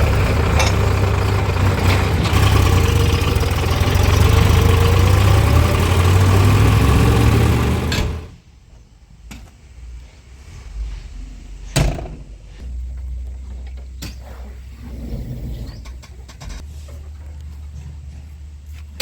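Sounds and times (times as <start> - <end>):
diesel engine running: 0.0 - 8.4.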